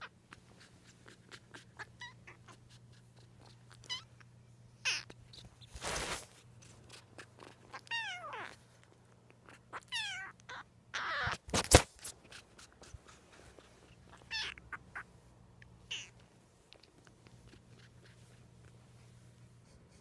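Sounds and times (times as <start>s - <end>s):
kitten meowing: 1.3s - 4.2s, 4.8s - 5.2s, 7.7s - 8.6s, 9.5s - 11.5s, 14.1s - 15.1s, 15.9s - 16.2s
rustle: 5.6s - 6.8s.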